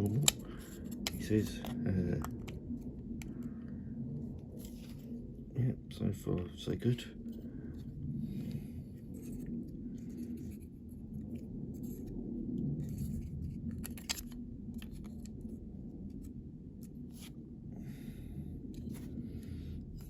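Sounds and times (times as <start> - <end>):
light rubbing of model parts: 0.0 - 2.4.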